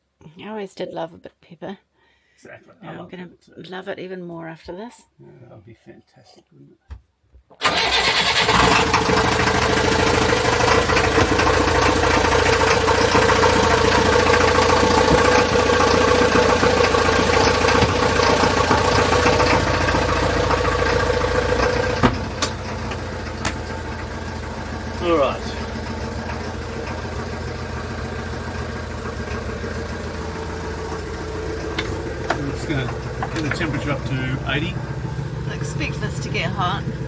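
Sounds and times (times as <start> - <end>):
engine knock: 7.7 - 37.0
boat engine running: 8.4 - 37.0.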